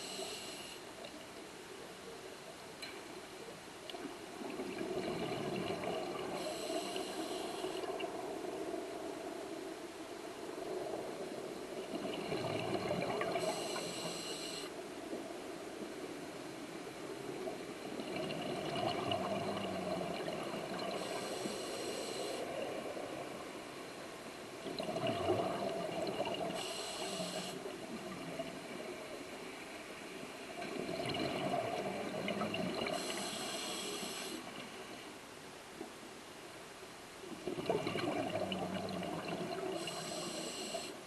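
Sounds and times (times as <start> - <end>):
regulator hiss on inhalation: 0.0 - 0.9, 6.4 - 7.9, 13.4 - 14.8, 20.9 - 22.6, 26.6 - 27.7, 32.9 - 34.5, 39.7 - 41.0
exhaust bubbles gurgling underwater: 4.4 - 8.8, 11.6 - 14.6, 17.2 - 23.4, 24.6 - 29.2, 30.5 - 34.6, 37.4 - 41.0.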